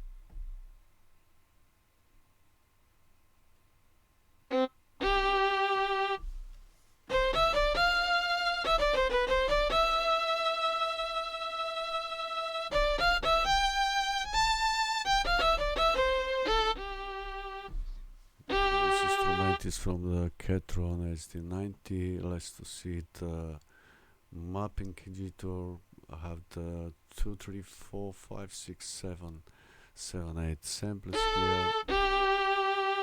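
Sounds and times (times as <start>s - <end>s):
sampled fiddle notes: 4.5s - 20.0s, 31.0s - 33.0s.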